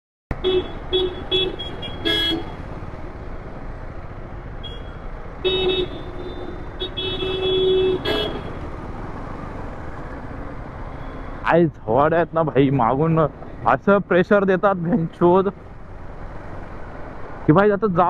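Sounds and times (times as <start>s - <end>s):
traffic rumble: 0.3s - 18.0s
vehicle horns honking: 0.4s - 2.6s, 4.6s - 8.6s.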